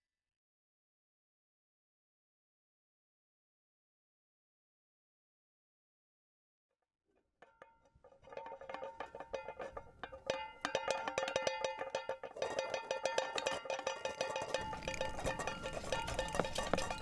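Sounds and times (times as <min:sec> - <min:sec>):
small hard objects clinking: 0:13.2 - 0:17.0
steady ringing tone: 0:14.5 - 0:17.0.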